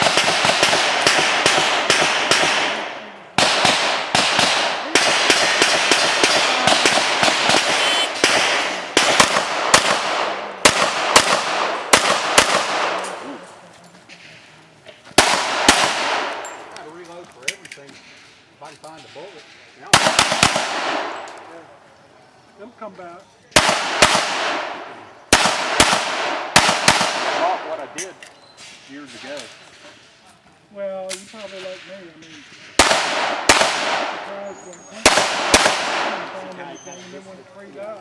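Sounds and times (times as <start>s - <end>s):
pistol shots echoing: 0.0s - 13.2s, 15.2s - 16.7s, 19.9s - 21.4s, 23.6s - 27.9s, 32.7s - 34.4s, 35.0s - 36.4s.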